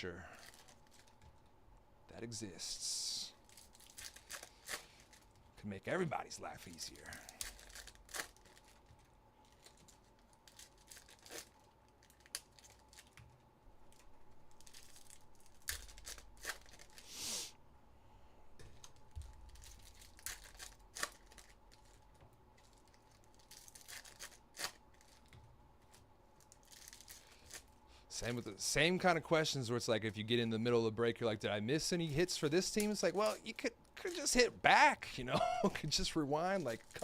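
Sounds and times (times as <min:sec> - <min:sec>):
wrappers tearing and crinkling: 0:00.2 - 0:01.2, 0:03.4 - 0:05.4, 0:06.7 - 0:13.2, 0:13.9 - 0:17.2, 0:18.9 - 0:27.8, 0:36.0 - 0:37.0.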